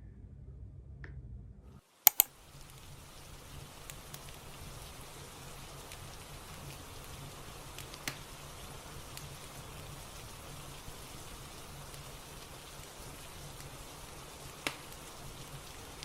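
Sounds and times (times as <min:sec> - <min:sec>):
rain: 0:01.9 - 0:16.0
sharp clicks: 0:02.1 - 0:02.3
fireplace crackles: 0:02.4 - 0:16.0.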